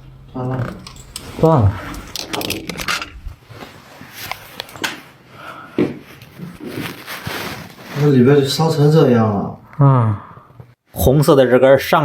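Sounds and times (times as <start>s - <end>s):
wire handling clicks and scrapes: 0.4s - 5.2s.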